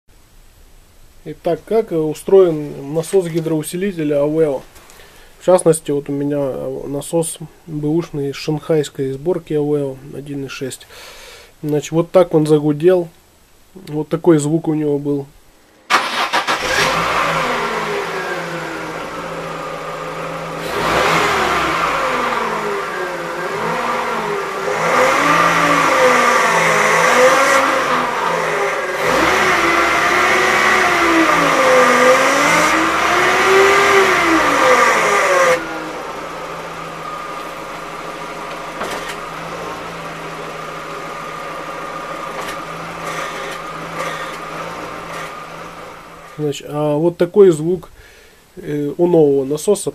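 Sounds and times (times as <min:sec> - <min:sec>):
car engine running: 0:15.9 - 0:46.4
power steering pump whine: 0:15.9 - 0:46.4.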